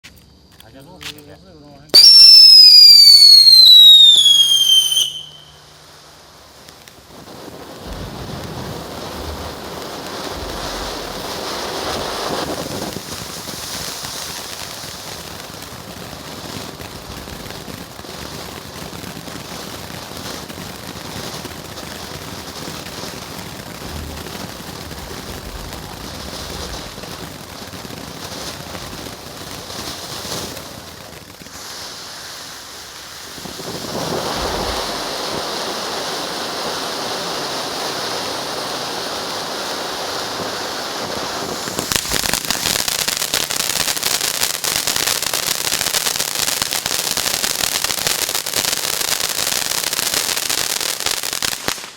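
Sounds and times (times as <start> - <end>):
firework crackling sparks: 0.0 - 51.9
low thumps: 7.8 - 12.6, 23.2 - 27.4, 34.3 - 35.1.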